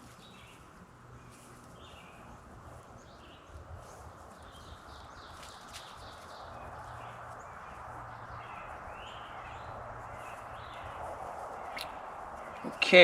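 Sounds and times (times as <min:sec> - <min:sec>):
steady outdoor hiss: 0:00.0 - 0:13.0
bird calls: 0:03.0 - 0:13.0.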